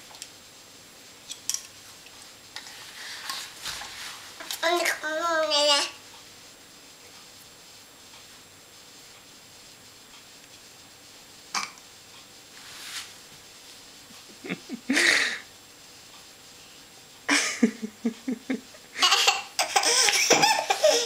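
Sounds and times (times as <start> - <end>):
baby belching: 11.6 - 11.8.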